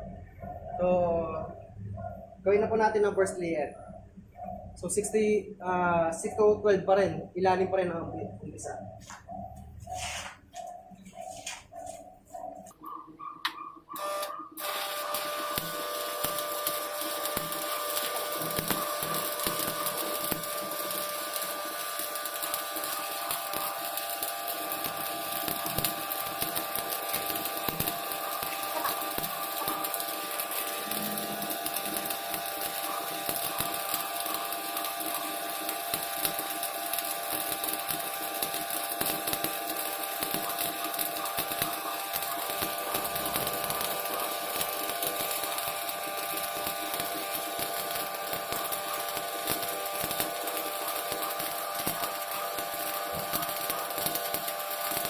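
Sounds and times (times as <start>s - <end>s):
welding arc crackling: 13.4s - 55.0s.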